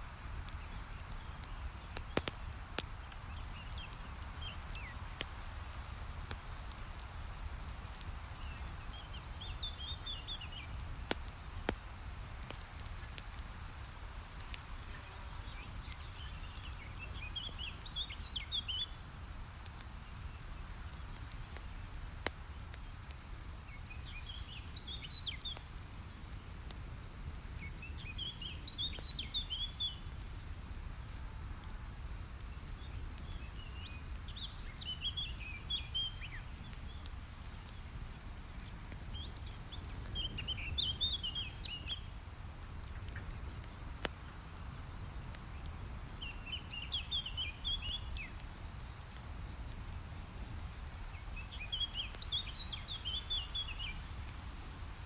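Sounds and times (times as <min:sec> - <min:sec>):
campfire crackling and popping: 0:00.0 - 0:55.0
songbird twittering: 0:46.2 - 0:48.3.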